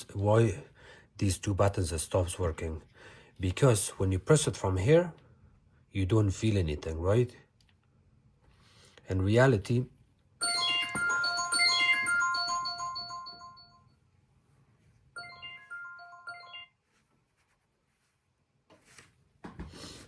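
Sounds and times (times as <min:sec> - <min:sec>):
electronic chime-like melody: 0:10.4 - 0:13.8, 0:15.2 - 0:16.8.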